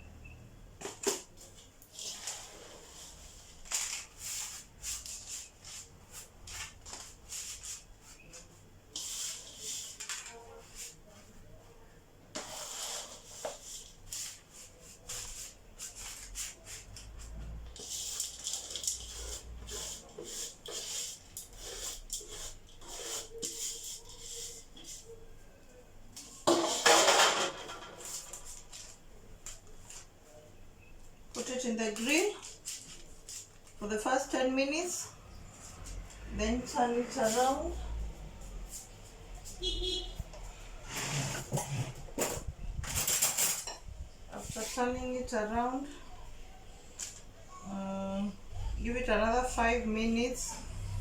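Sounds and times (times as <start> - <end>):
oat mixture scraping on tray: 12.3 - 14.0, 17.7 - 25.0, 40.8 - 42.0.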